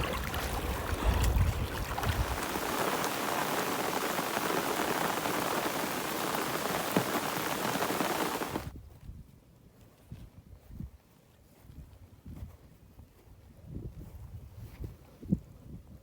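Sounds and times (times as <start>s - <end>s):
steady hissing noise: 2.0s - 8.7s.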